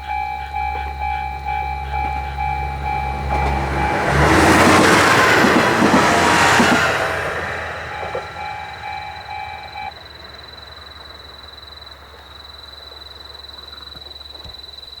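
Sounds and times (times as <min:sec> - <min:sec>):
thin high-pitched trill: 0:00.0 - 0:05.4
level crossing warning bell: 0:00.0 - 0:15.0.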